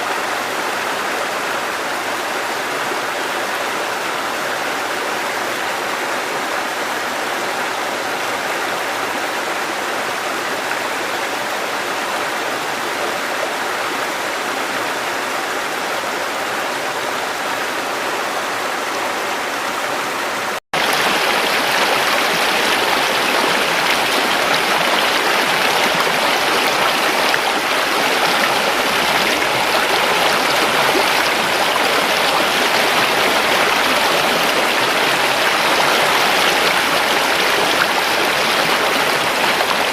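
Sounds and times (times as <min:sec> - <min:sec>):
river water rushing over rocks: 0:18.4 - 0:39.9.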